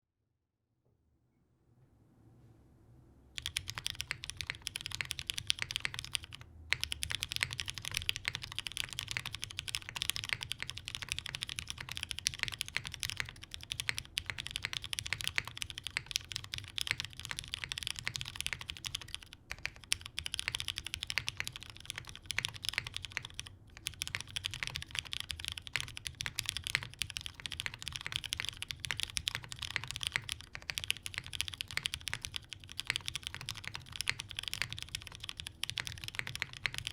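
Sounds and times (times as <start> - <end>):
mechanical keyboard typing: 3.4 - 36.9.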